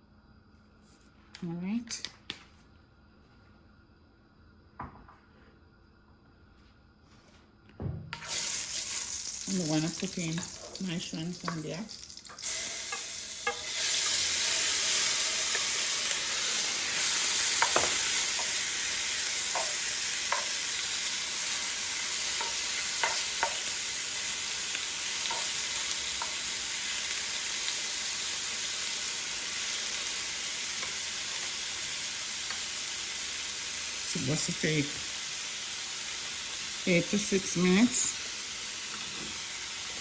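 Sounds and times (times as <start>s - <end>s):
shrimp sizzling in hot oil: 8.2s - 40.0s.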